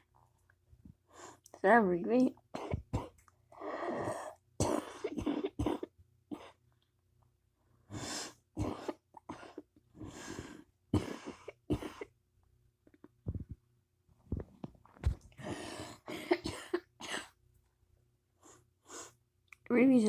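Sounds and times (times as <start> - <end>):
harsh coughing: 4.6 - 6.6, 16.0 - 17.4.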